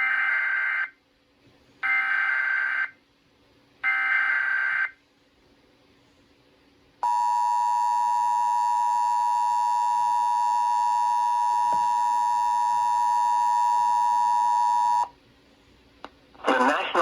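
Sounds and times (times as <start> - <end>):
loud steady electronic tone: 7.0 - 15.1.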